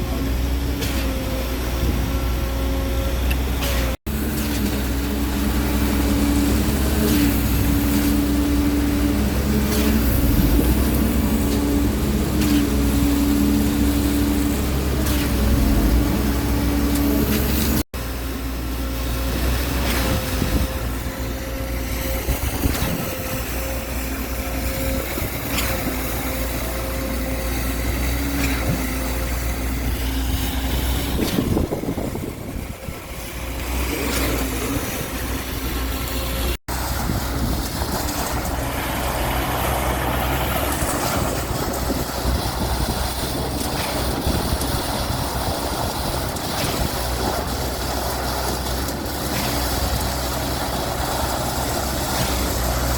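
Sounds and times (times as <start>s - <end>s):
truck diesel engine running: 32.4s - 46.6s.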